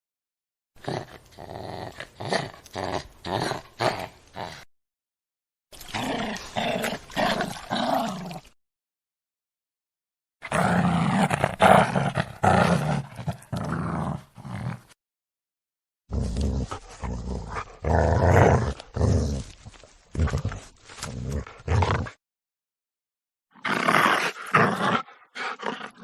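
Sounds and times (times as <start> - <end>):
dog barking and growling: 10.4 - 15.0.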